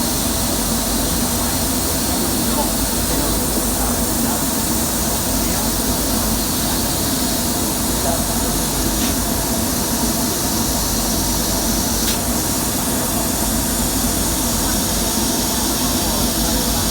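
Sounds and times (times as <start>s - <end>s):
laser cutting machine humming: 0.1s - 16.9s.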